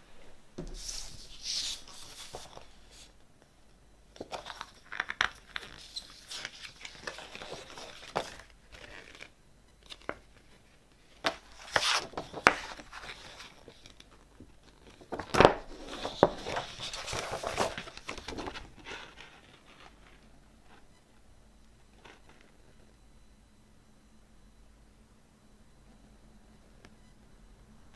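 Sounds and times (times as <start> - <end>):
paper sleeves rustling and sliding: 0.6 - 3.2, 11.2 - 14.0, 14.9 - 20.2.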